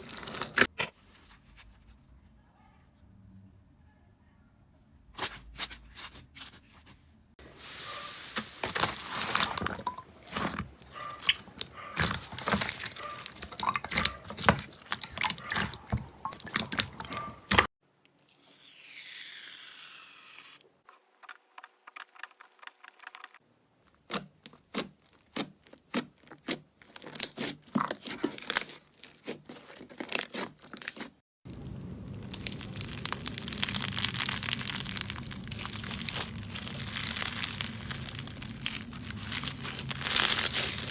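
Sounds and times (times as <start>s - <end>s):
crunchy slime crackling: 0.0s - 0.7s, 7.9s - 17.7s, 23.8s - 40.9s
slime squishing: 0.0s - 0.7s, 7.6s - 17.7s, 23.8s - 40.9s.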